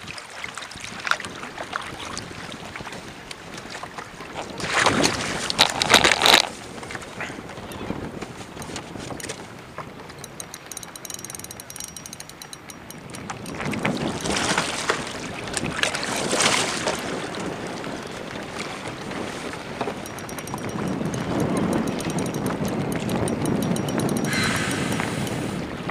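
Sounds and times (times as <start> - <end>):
water splashing around a kayak: 0.0 - 10.0, 13.6 - 20.0
wind buffeting microphone: 12.0 - 25.9.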